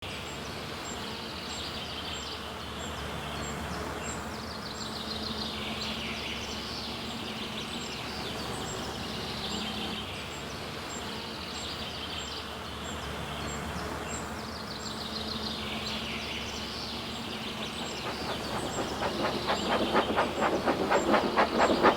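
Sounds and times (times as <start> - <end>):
steady low hum: 17.1 - 21.9.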